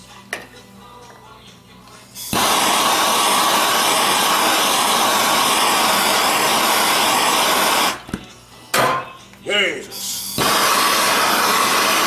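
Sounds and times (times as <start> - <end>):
torch hissing: 2.2 - 8.1, 10.2 - 12.0.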